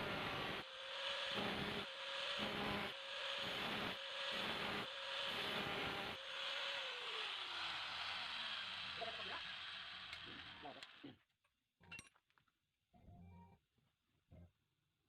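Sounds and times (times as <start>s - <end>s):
metal grinding hiss: 0.0s - 11.0s
grinder motor whine: 0.0s - 11.1s.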